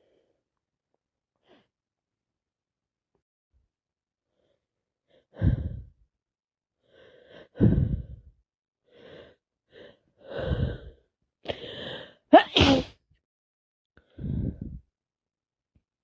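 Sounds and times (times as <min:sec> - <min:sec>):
person breathing heavily: 0:04.4 - 0:06.0, 0:06.8 - 0:08.3, 0:08.9 - 0:12.2, 0:14.0 - 0:14.8
person sneezing: 0:12.4 - 0:13.0.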